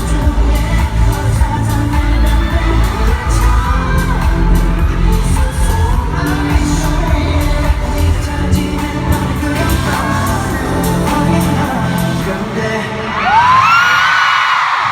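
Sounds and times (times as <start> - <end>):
pop song through arena speakers: 0.0 - 14.9
crowd screaming: 0.1 - 7.1, 12.8 - 14.9.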